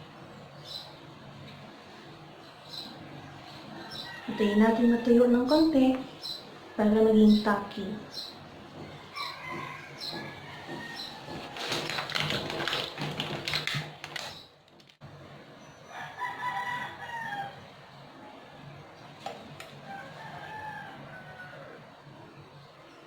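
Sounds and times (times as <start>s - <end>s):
rooster crowing: 3.7s - 5.5s, 8.9s - 11.8s, 15.9s - 17.7s, 19.8s - 22.0s.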